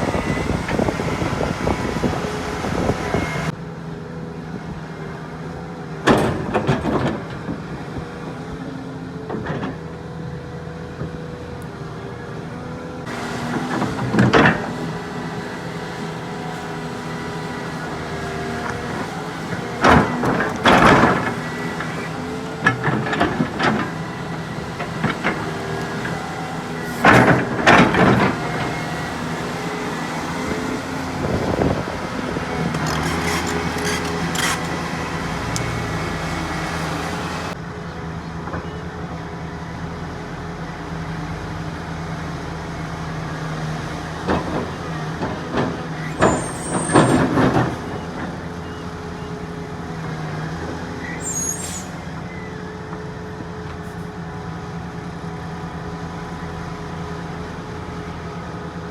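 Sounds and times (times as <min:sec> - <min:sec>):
heavy diesel engines running: 0:00.0 - 0:58.9.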